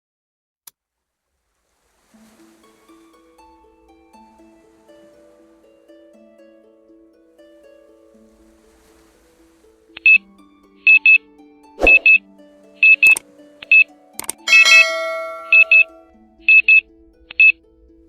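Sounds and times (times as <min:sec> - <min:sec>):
soft background music: 0:02.1 - 0:18.0
bell-like chime: 0:12.8 - 0:16.6
timer alarm beeps: 0:13.7 - 0:16.8.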